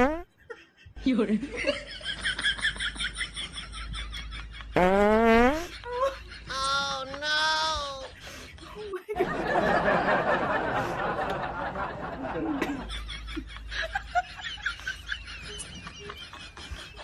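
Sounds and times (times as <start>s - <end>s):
snickering and giggling laughter: 0.3s - 4.8s, 5.6s - 7.2s, 7.8s - 17.0s.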